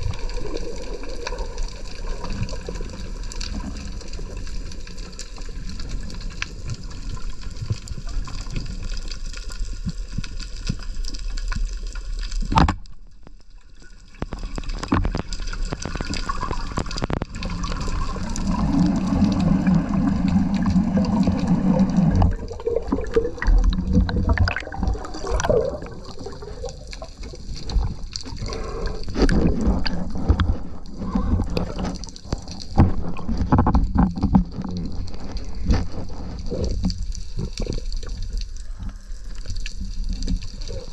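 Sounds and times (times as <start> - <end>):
small splashes and clicks: 0.0 - 40.9
water sloshing and gurgling: 0.0 - 40.9.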